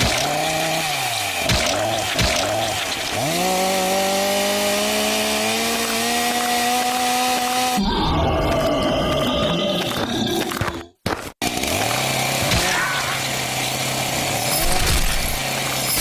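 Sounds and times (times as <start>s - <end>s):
chainsaw engine revving: 0.0s - 7.8s, 11.4s - 16.0s.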